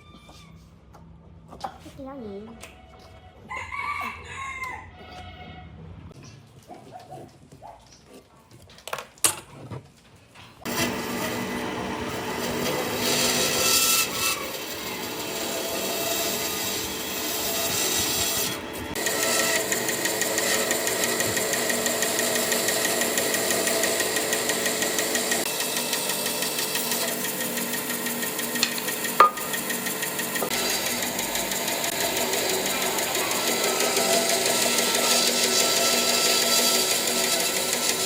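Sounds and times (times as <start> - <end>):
power tool running on wood: 10.7 - 38.0
knocks: 28.6 - 29.6.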